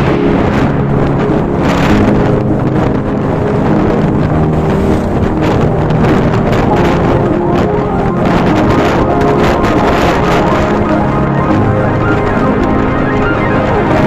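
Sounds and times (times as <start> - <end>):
wind buffeting microphone: 0.0 - 14.0.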